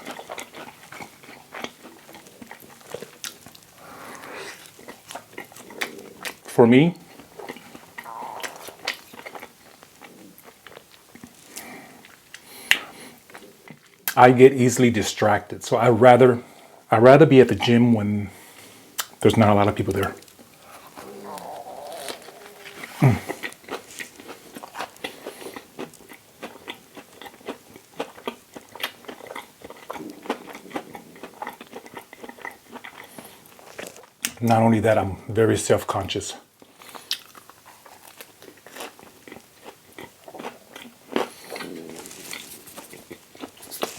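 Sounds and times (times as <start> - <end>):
chewing and biting sandwich: 0.0 - 14.1, 20.2 - 34.3, 36.6 - 43.9
wet mouth sounds: 7.2 - 10.9, 20.3 - 25.9.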